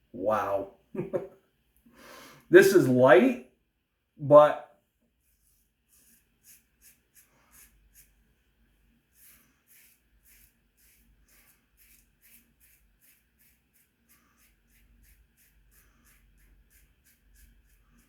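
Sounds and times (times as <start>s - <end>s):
razor scraping stubble: 5.4s - 8.2s, 9.1s - 18.0s.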